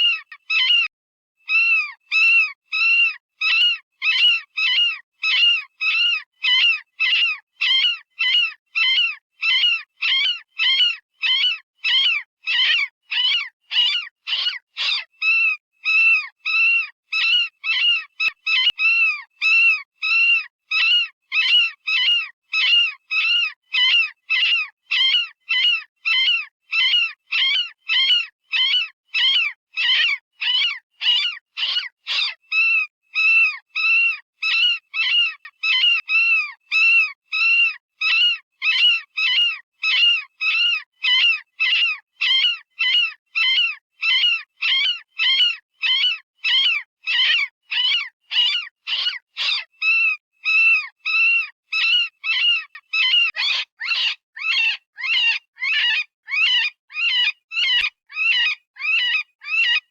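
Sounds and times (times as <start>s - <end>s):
synthesized rabbit distress screams: 49.8s - 59.8s.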